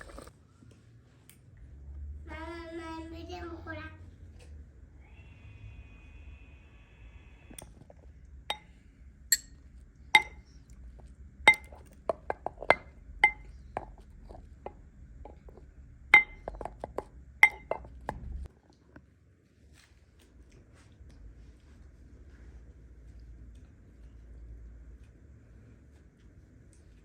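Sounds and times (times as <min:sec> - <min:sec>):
dishes and glassware clinking: 0:10.2 - 0:10.4, 0:11.5 - 0:14.4, 0:16.2 - 0:18.0.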